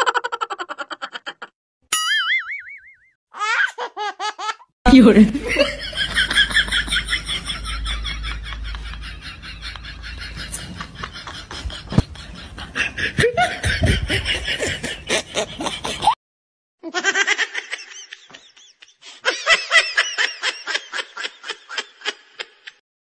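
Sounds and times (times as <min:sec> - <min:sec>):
person laughing: 0:04.5 - 0:16.2.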